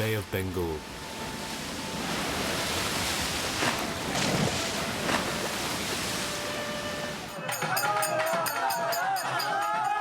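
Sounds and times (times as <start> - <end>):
waves breaking on shore: 0.0 - 7.8.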